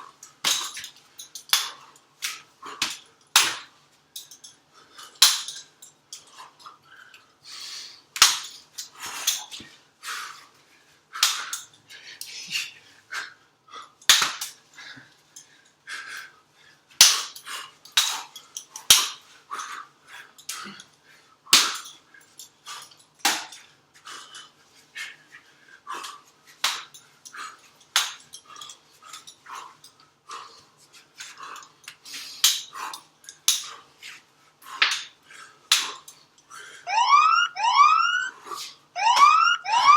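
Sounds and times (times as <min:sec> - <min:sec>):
hard breathing: 0:06.2 - 0:36.9.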